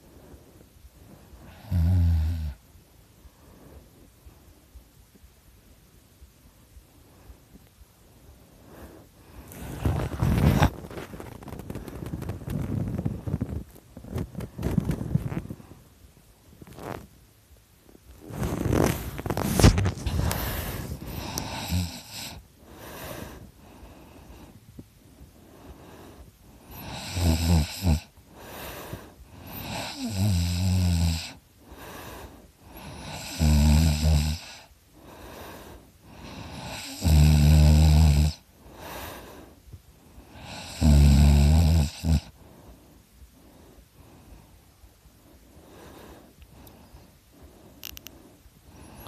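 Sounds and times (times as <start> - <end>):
quiet breathing: 0.0 - 49.0
person snoring heavily: 1.4 - 2.6, 18.3 - 23.4, 25.8 - 39.4, 40.2 - 42.4.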